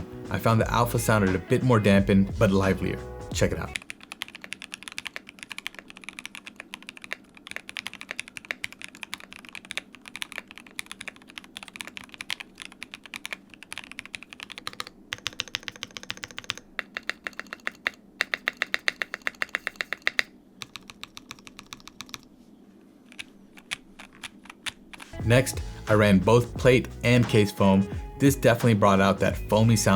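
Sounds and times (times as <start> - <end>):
typing on mechanical keyboard: 3.8 - 22.3, 23.1 - 25.2.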